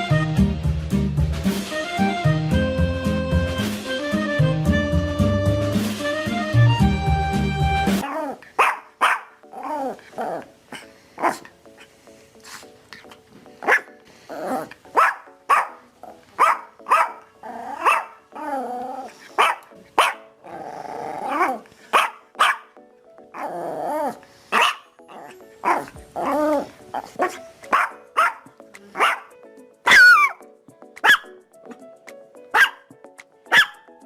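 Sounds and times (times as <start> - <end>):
dog barking sharply: 8.0 - 9.4, 13.6 - 13.9, 15.0 - 15.8, 16.4 - 17.2, 17.8 - 18.2, 19.4 - 20.2, 21.9 - 22.7, 24.5 - 24.9, 27.2 - 29.3, 29.9 - 30.4, 31.0 - 31.3, 32.6 - 32.8, 33.5 - 33.8
dog drawn-out calls: 8.0 - 11.4, 16.4 - 18.4.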